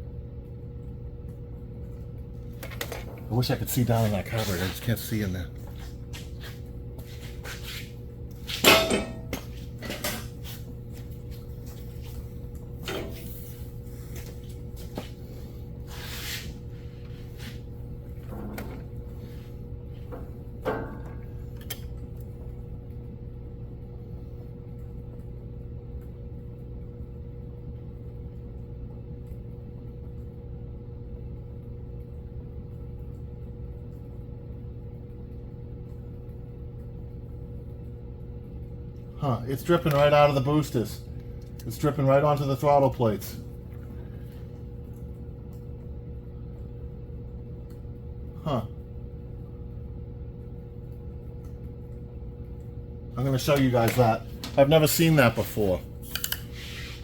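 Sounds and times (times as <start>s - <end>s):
steady low hum: 0.0s - 57.0s
knocks and clinks of tools: 8.6s - 10.3s.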